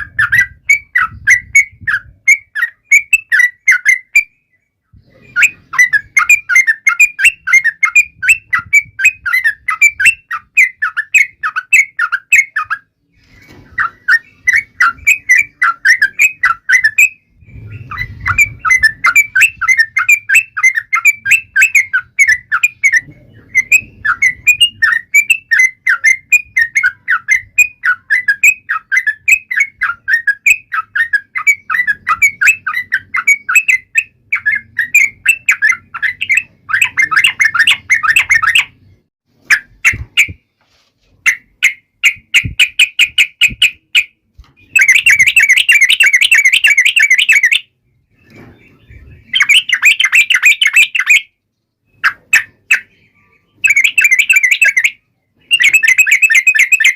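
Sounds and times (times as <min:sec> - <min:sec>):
bird chattering calls: 0:13.7 - 0:38.8, 0:48.7 - 0:51.4.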